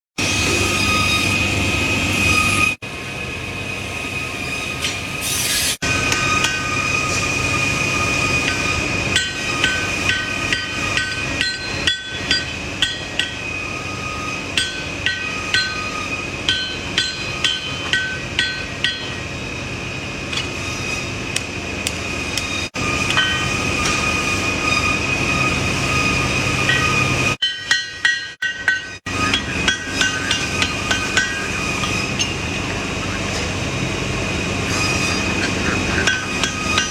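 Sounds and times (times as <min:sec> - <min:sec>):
hammer striking metal on anvil: 0:05.8 - 0:07.2, 0:07.8 - 0:19.3, 0:21.3 - 0:26.0, 0:26.6 - 0:33.5, 0:34.8 - 0:36.9.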